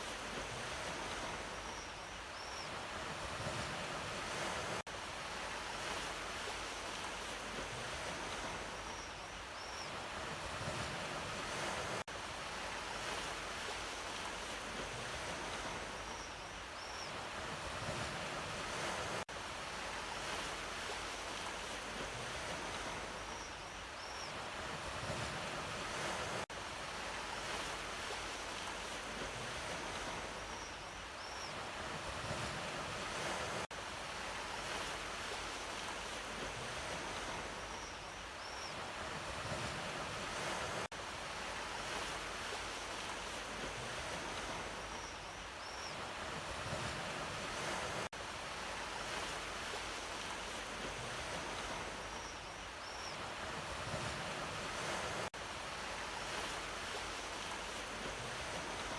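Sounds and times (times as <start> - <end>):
ocean waves washing in: 31.6 - 37.9, 38.8 - 45.1, 45.8 - 52.3, 52.9 - 58.9.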